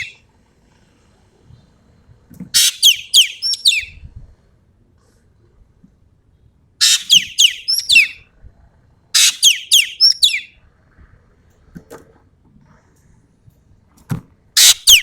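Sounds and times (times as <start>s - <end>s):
bird harsh rasp and whistled notes: 2.6s - 4.0s, 6.8s - 8.2s, 9.2s - 10.5s, 14.6s - 15.0s.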